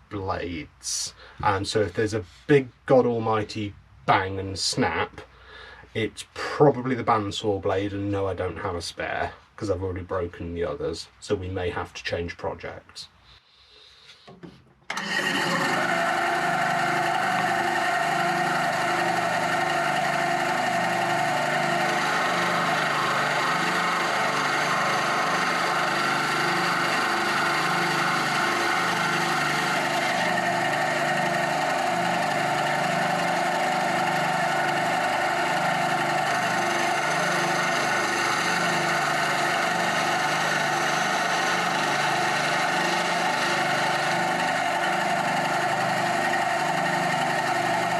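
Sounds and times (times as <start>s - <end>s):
bandsaw cutting wood: 14.9s - 47.9s.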